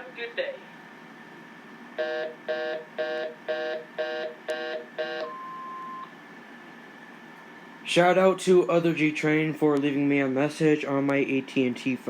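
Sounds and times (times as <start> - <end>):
pulsing telephone line tone: 2.0 - 6.1
answering machine beep: 2.6 - 6.1.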